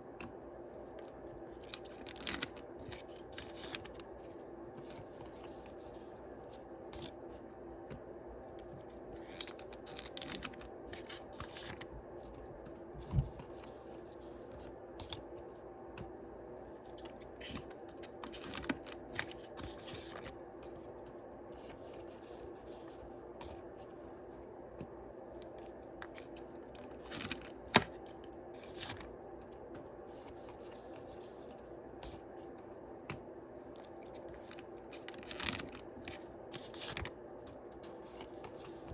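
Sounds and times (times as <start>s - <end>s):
wrappers rustling and crinkling: 1.6s - 4.0s, 9.2s - 11.8s, 17.4s - 20.3s, 26.1s - 27.9s, 33.8s - 37.1s.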